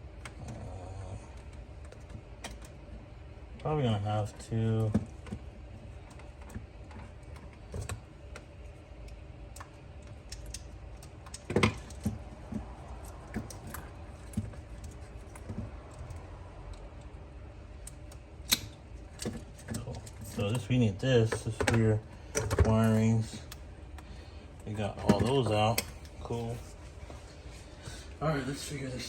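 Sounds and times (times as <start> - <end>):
low steady hum: 0.0 - 29.0.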